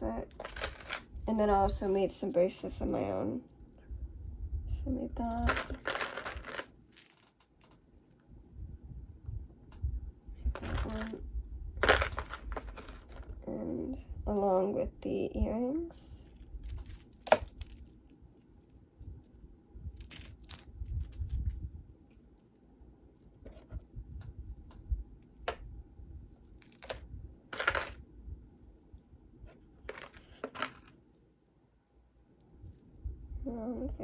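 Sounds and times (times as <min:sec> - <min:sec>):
metal jewelry clinking and jingling: 0:00.0 - 0:03.3, 0:05.4 - 0:08.2, 0:10.6 - 0:11.2, 0:11.8 - 0:13.3, 0:14.1 - 0:25.5, 0:26.2 - 0:28.0, 0:29.9 - 0:31.2.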